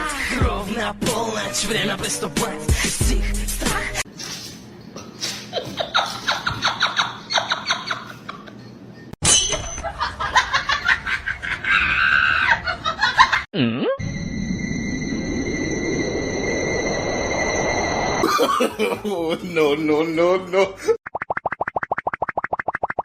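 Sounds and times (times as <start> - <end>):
people laughing: 9.9 - 13.5, 18.2 - 21.0
swooping pitch sound: 14.0 - 18.2.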